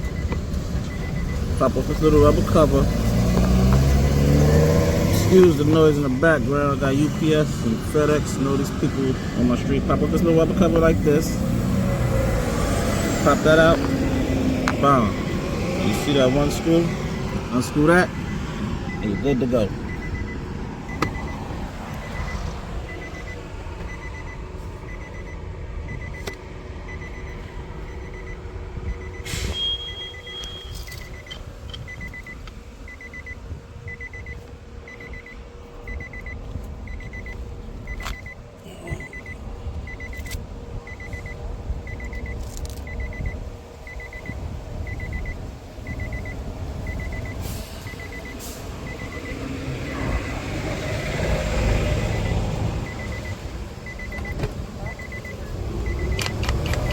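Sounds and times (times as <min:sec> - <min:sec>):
high-pitched beeps: 0:00.0 - 0:07.3, 0:13.2 - 0:50.6, 0:52.0 - 0:56.9
vehicle engine running: 0:00.0 - 0:29.3, 0:30.0 - 0:56.9.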